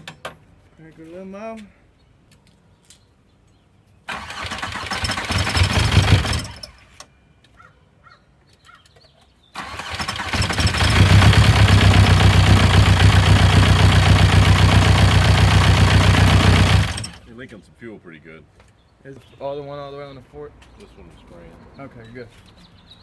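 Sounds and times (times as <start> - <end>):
diesel engine cranking and running: 4.1 - 7.1, 9.6 - 17.3.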